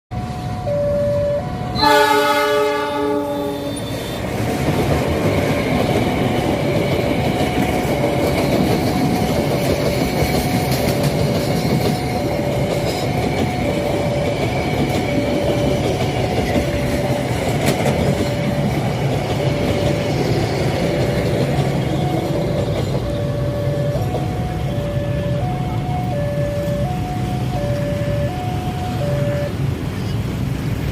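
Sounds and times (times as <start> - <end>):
train wheels rumbling on rails: 1.4 - 30.9
train chord horn: 1.7 - 4.2
two-note alternating tone: 21.9 - 29.6.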